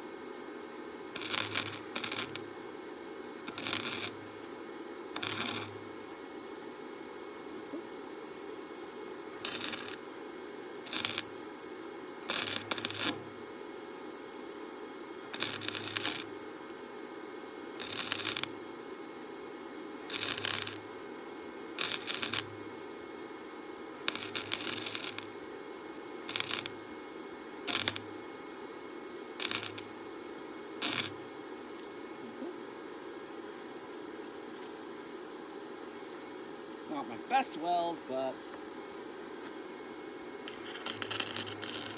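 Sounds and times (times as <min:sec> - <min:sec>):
steady background hum: 0:00.0 - 0:41.9
welder arc crackling: 0:01.1 - 0:06.3, 0:08.7 - 0:10.1, 0:10.7 - 0:13.6, 0:15.3 - 0:16.8, 0:17.8 - 0:18.6, 0:20.1 - 0:22.9, 0:24.0 - 0:28.3, 0:29.4 - 0:30.2, 0:30.8 - 0:31.9, 0:40.4 - 0:41.9.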